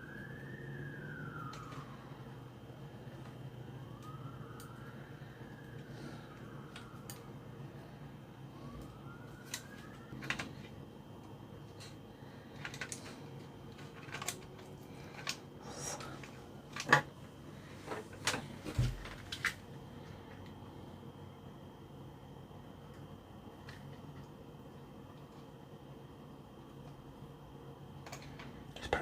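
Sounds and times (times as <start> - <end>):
faint rising and falling tone: 0.0 - 16.7
steady low hum: 0.0 - 29.0.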